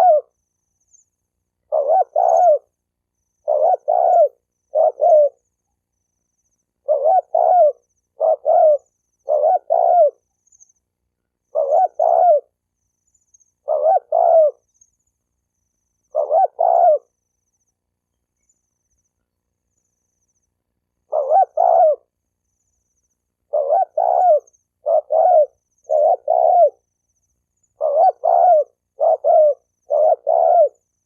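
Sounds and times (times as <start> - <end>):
dove cooing: 0.0 - 0.4, 1.6 - 2.8, 3.4 - 5.5, 6.8 - 10.3, 11.5 - 12.6, 13.6 - 14.7, 16.1 - 17.2, 21.0 - 22.2, 23.4 - 26.9, 27.8 - 30.9.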